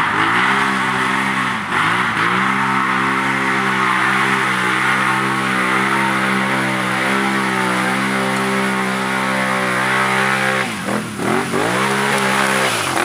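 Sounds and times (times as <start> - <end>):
atv engine revving: 0.0 - 13.0.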